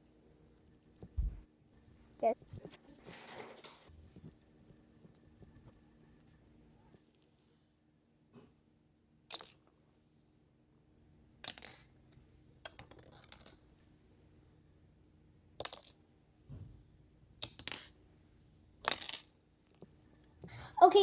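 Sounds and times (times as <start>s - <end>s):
fidget toy clicks and rustles: 12.6s - 13.7s, 17.4s - 18.0s.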